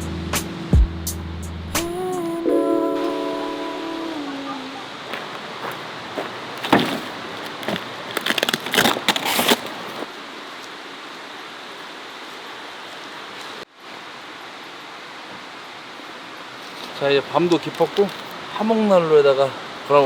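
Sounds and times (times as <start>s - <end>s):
steady hiss: 9.5s - 20.0s.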